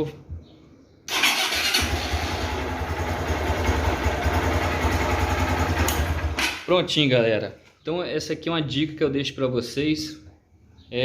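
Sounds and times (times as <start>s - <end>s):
electric starter cranking: 1.1s - 3.1s
motorcycle engine idling: 1.8s - 6.4s.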